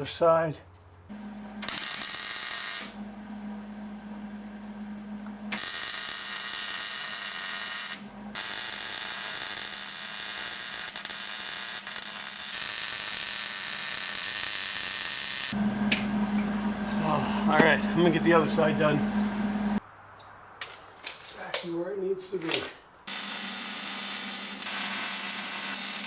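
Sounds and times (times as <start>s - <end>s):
steady hum: 1.1s - 2.1s, 2.8s - 5.7s, 15.6s - 19.8s
electric welder welding: 1.4s - 3.2s, 5.5s - 16.5s, 23.1s - 26.0s.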